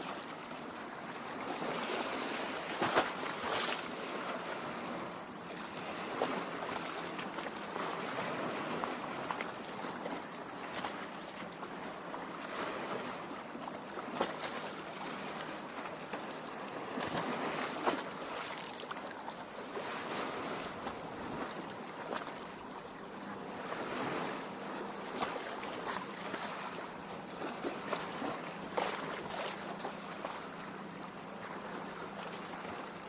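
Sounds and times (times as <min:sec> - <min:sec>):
waves lapping on rocky shore: 0:00.0 - 0:33.0.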